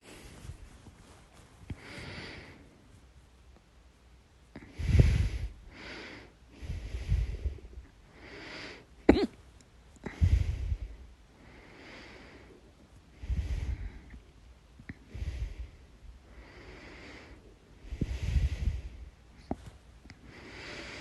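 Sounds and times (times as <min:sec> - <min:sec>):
breathing: 0:00.0 - 0:02.8, 0:04.6 - 0:08.9, 0:10.0 - 0:14.3, 0:14.9 - 0:21.0
person hiccuping: 0:09.1 - 0:09.4.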